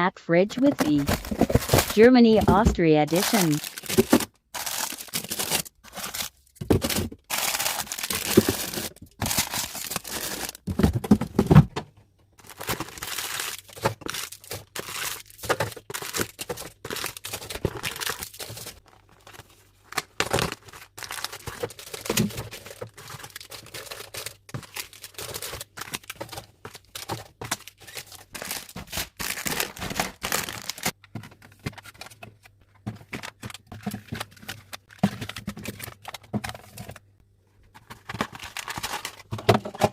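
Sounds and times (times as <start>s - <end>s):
plastic packaging crinkling: 0.5s - 10.9s, 12.4s - 31.0s, 37.8s - 39.4s.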